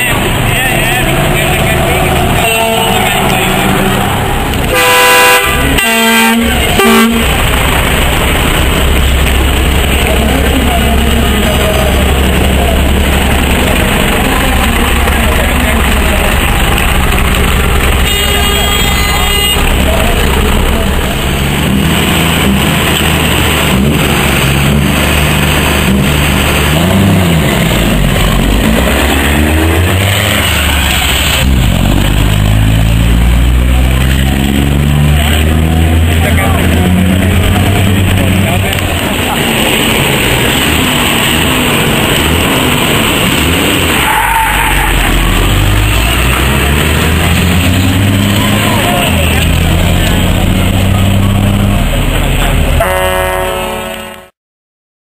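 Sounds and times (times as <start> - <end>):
low engine rumble: 0.0 - 54.3
truck horn blasts: 4.6 - 7.4, 17.8 - 20.1, 52.8 - 54.4.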